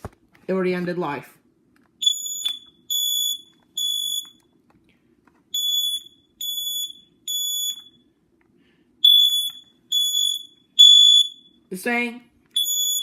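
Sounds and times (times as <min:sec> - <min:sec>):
smoke alarm high beeps: 0:02.0 - 0:04.4, 0:05.5 - 0:08.1, 0:09.0 - 0:11.6, 0:12.6 - 0:13.0.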